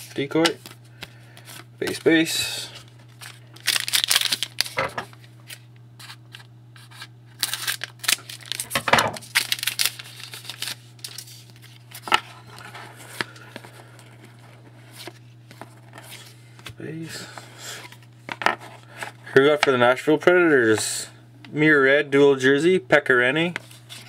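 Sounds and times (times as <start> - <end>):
cards handled: 0.0 - 16.8
steady low hum: 0.0 - 24.0
wrapper tearing and crinkling: 3.1 - 4.9, 5.5 - 12.1.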